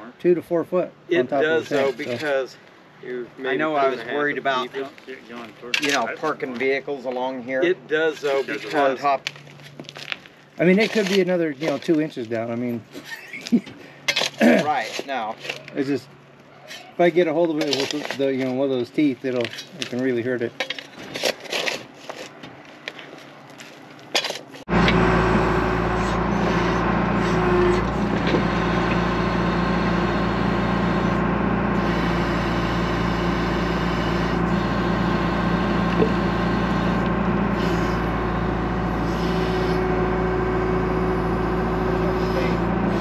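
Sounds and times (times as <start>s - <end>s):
diesel engine running: 24.6s - 43.0s.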